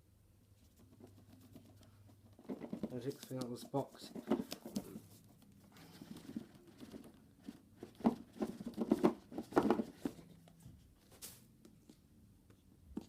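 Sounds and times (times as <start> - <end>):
cardboard box being handled: 5.8 - 10.4.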